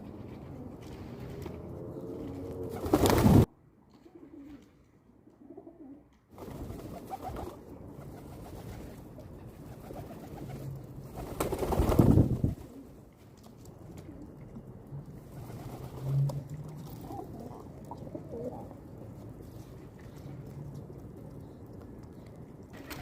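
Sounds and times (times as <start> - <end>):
pigeons cooing: 5.4 - 6.0, 16.3 - 19.0.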